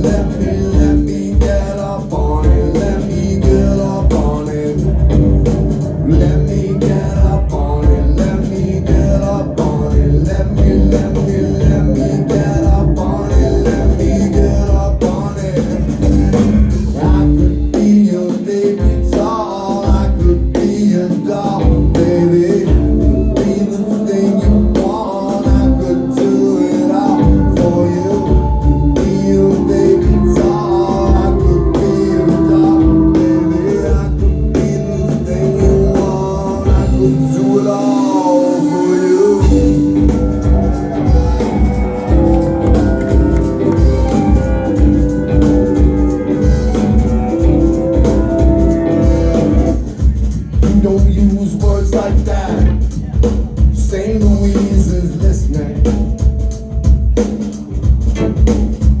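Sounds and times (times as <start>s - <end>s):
live rock band playing: 0.0s - 59.0s.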